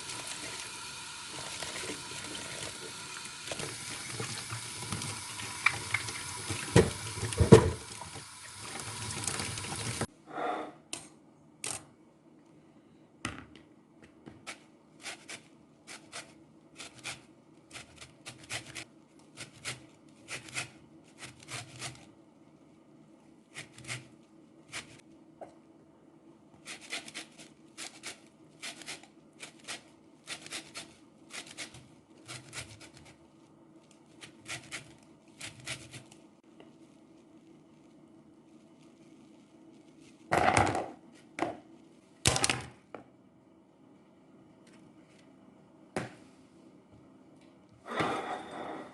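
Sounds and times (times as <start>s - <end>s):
tap water running: 0.0s - 10.1s.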